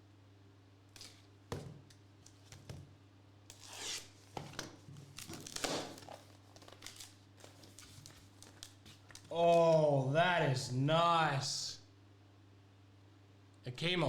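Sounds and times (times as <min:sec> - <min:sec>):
wrapper rustling and tearing: 0:00.9 - 0:01.3, 0:03.5 - 0:09.3
steady low hum: 0:09.0 - 0:14.0.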